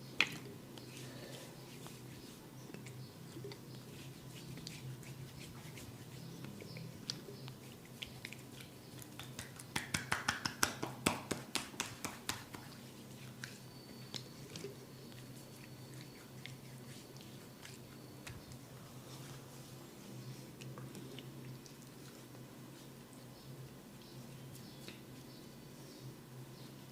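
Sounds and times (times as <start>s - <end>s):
wet rubbing of oiled hair: 3.5s - 20.6s
sharp snaps: 9.0s - 12.6s
small clicks of hands: 9.0s - 12.7s.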